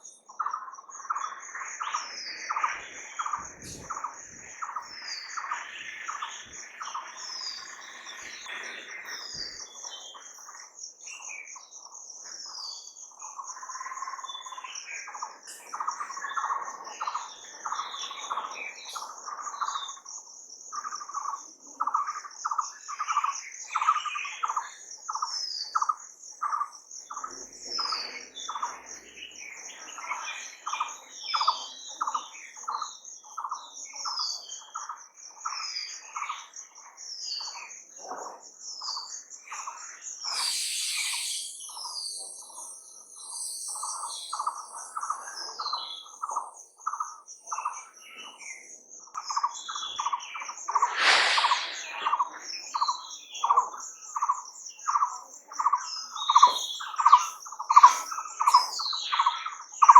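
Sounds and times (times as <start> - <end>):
insect trill: 0.0 - 59.9
birds chirping: 1.9 - 10.5, 39.9 - 48.6, 49.5 - 52.3.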